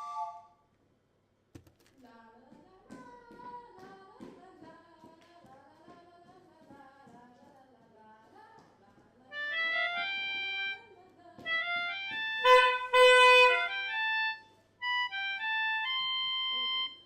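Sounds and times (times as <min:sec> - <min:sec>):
simple melody on one instrument: 0:00.0 - 0:00.6, 0:09.3 - 0:17.0.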